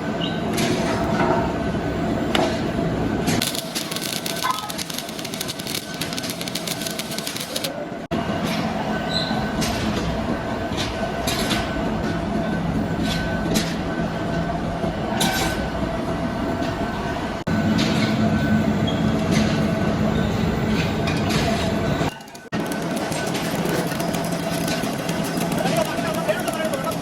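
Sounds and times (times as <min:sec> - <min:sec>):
machinery humming: 0:01.4 - 0:27.0
sharp metallic clicks: 0:03.4 - 0:07.7.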